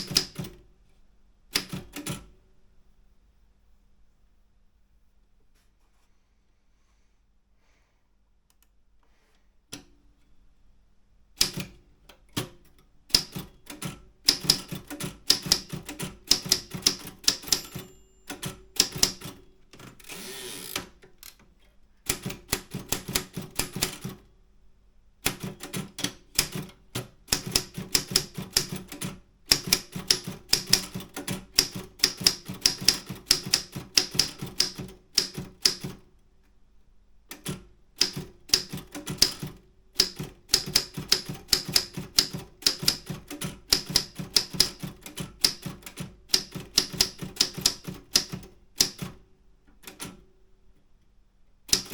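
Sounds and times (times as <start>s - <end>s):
typewriter key strikes: 0.0s - 0.6s, 11.4s - 11.8s, 12.4s - 20.9s, 25.3s - 36.0s, 37.3s - 49.2s, 51.7s - 51.9s.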